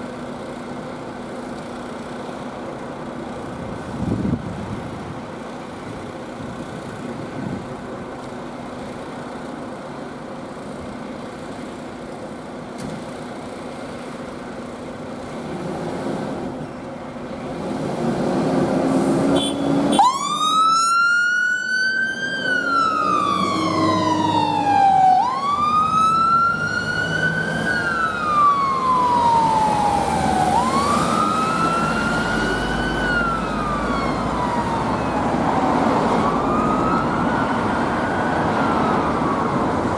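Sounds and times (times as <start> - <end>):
fire engine running: 0.0 - 39.9
siren wailing: 19.9 - 39.9.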